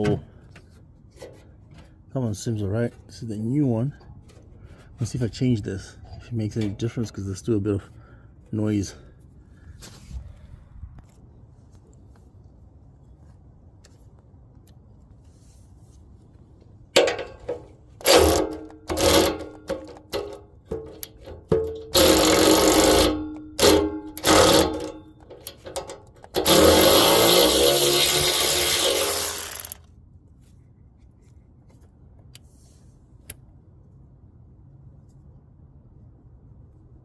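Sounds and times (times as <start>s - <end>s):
power tool bursts: 18.0s - 20.4s, 21.8s - 25.5s, 26.3s - 29.8s.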